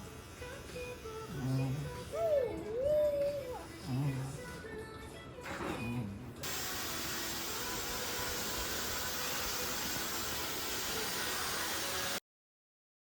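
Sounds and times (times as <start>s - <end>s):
vacuum cleaner running: 6.4s - 12.2s.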